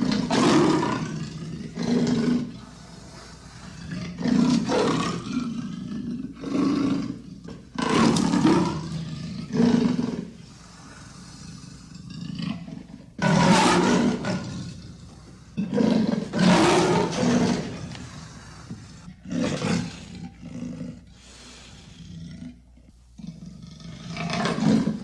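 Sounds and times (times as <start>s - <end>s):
leopard roaring calls: 0.0s - 2.5s, 11.2s - 21.0s, 23.2s - 25.0s.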